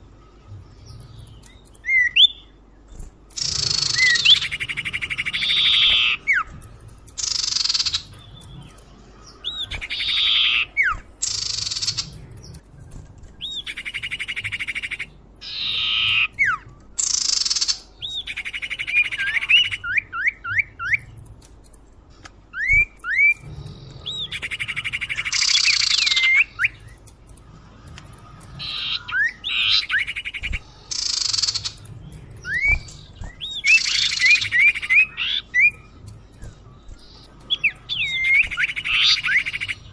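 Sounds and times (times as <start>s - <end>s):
harsh buzzy bird calls: 0.0s - 21.3s, 22.5s - 39.9s
whistled bird notes: 0.8s - 2.6s, 3.4s - 6.5s, 22.5s - 27.0s, 28.6s - 39.9s.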